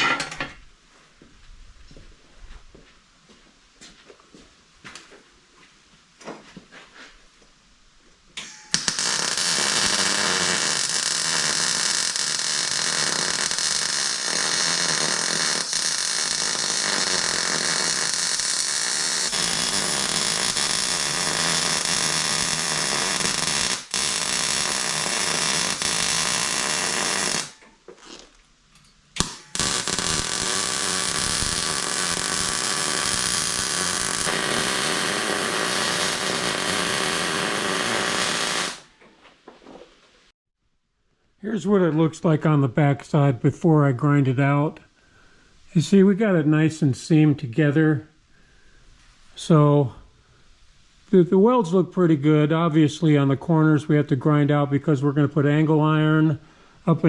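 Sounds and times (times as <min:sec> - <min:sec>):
arc welding crackling hiss: 0:08.4 - 0:28.4, 0:29.2 - 0:39.0.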